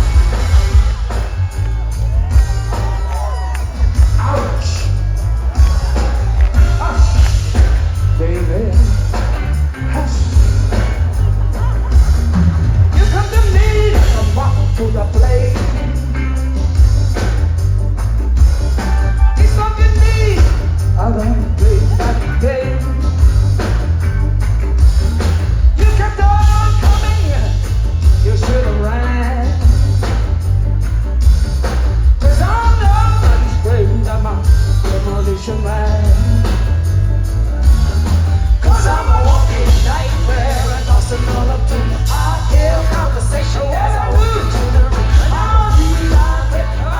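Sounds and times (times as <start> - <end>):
live rock band playing: 0.0 - 46.9.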